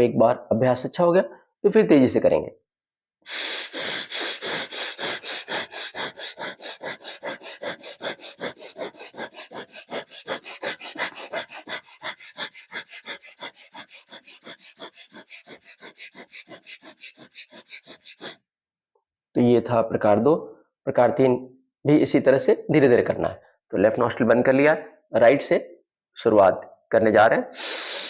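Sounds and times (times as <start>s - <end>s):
rapid forceful breathing through nostril: 3.3s - 18.4s, 27.6s - 28.0s.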